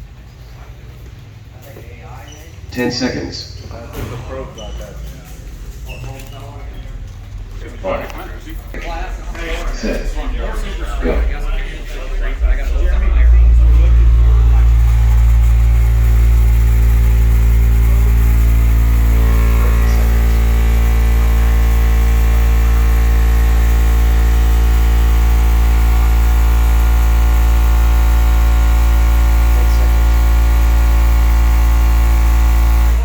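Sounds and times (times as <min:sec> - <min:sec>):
subwoofer bass tone: 0:08.7 - 0:33.0.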